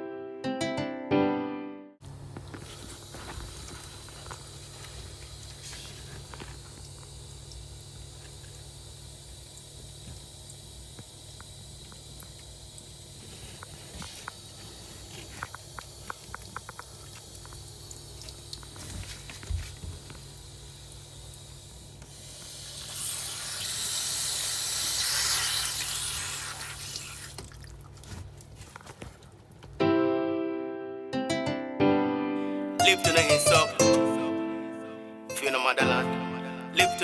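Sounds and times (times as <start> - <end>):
clicks and taps of plumbing work: 2.4 - 28.5
water rushing through pipe: 2.7 - 27.9.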